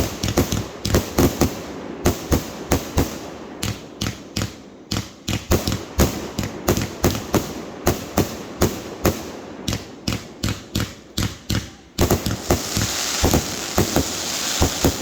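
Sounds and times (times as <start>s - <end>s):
fireworks bangs: 5.3s - 15.0s
fireworks crackling hiss: 12.0s - 15.0s.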